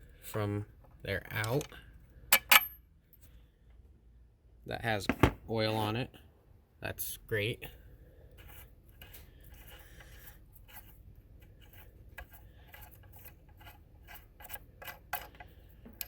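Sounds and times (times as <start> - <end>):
faint metallic bolt clicks and scrapes: 0.1 - 3.8, 8.3 - 16.0.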